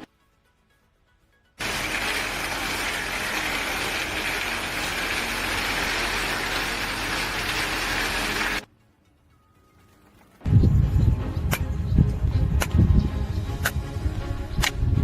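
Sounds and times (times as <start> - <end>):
mechanical running noise: 1.6 - 8.7.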